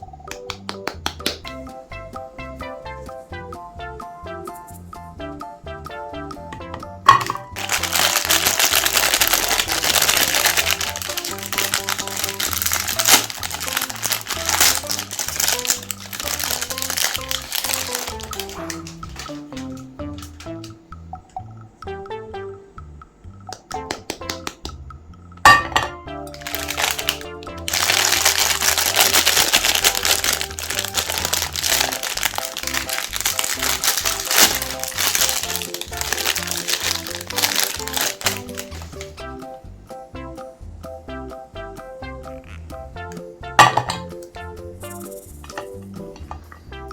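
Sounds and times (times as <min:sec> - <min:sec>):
background music with bass line: 0:00.0 - 0:46.9
meat grinder crunching ice cream: 0:07.6 - 0:18.7, 0:26.5 - 0:38.9.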